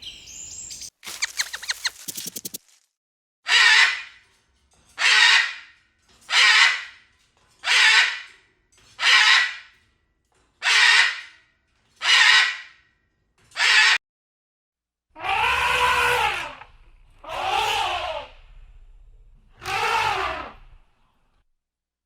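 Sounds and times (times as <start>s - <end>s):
animal's harsh raspy call: 3.5s - 4.2s, 5.0s - 5.7s, 6.3s - 7.0s, 7.6s - 8.3s, 9.0s - 9.7s, 10.6s - 11.4s, 12.0s - 12.7s, 13.6s - 14.0s, 15.2s - 18.6s, 19.5s - 20.8s.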